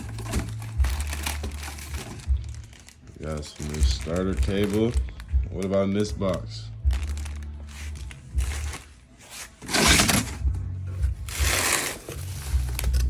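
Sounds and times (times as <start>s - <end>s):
cardboard tearing: 8.4s - 10.4s, 11.3s - 13.0s
cardboard box rustling and scraping: 9.2s - 10.4s.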